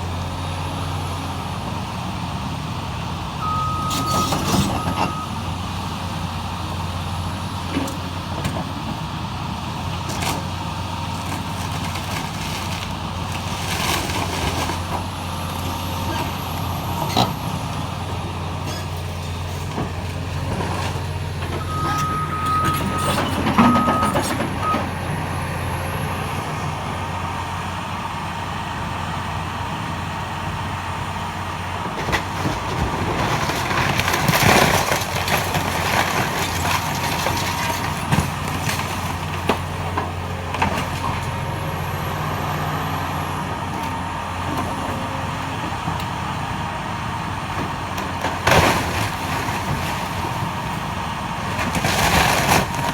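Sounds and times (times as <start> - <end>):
heavy diesel machinery running: 0.0 - 52.9
reversing alarm beeping: 3.4 - 5.4, 21.6 - 25.0.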